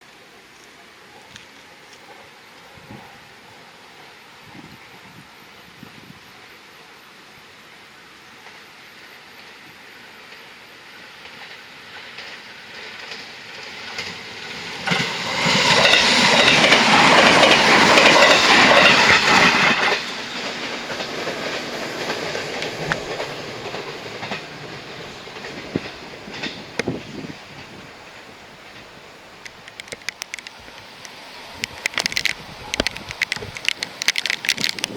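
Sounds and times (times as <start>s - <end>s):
electric train passing: 0.0s - 34.9s
wheels clattering over rail joints: 11.1s - 34.9s.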